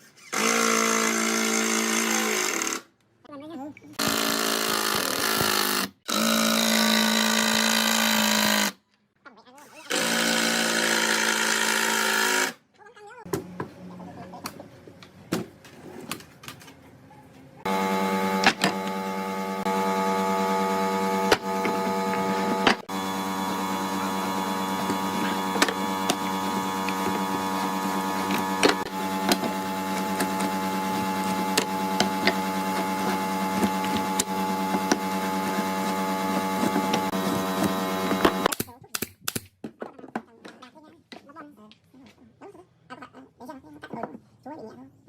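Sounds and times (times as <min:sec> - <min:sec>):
electric motor running: 0:04.0 - 0:08.8, 0:09.8 - 0:12.6, 0:17.6 - 0:38.5.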